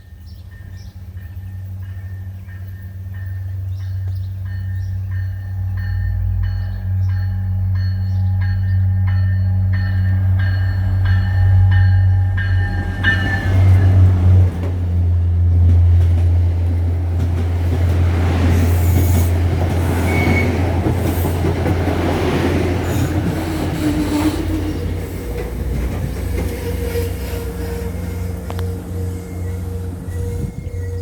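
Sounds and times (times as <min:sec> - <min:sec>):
diesel train engine drone: 0:00.0 - 0:31.0
train wheels rolling: 0:00.0 - 0:31.0
wheels squealing: 0:18.5 - 0:21.8, 0:22.8 - 0:31.0.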